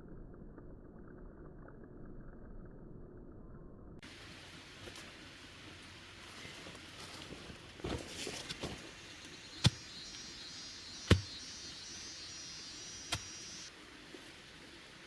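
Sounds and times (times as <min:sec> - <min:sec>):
rustling: 0:05.8 - 0:09.8
high steady buzz: 0:08.9 - 0:13.7
sharp knocks: 0:11.0 - 0:11.4.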